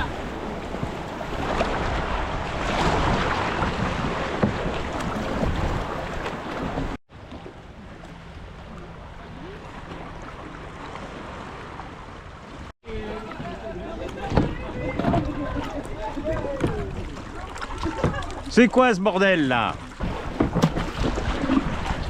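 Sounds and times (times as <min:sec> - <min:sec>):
wind buffeting microphone: 0:00.0 - 0:07.0
sea water splashing: 0:00.0 - 0:22.0.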